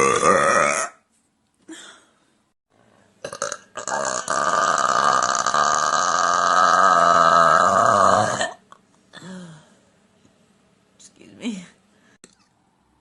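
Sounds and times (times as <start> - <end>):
woman burping: 0.0 - 1.0, 3.2 - 8.6.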